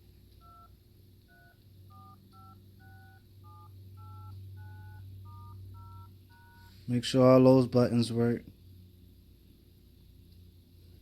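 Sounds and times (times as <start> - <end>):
low steady hum: 0.0 - 11.0
keypad touch tone beeps: 0.4 - 0.7, 1.3 - 6.7.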